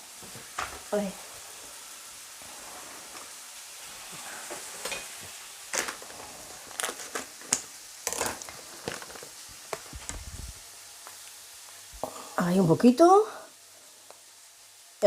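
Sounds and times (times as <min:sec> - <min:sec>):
onion sizzling in a frying pan: 0:00.0 - 0:15.0
small objects clicking and scraping: 0:05.7 - 0:10.2.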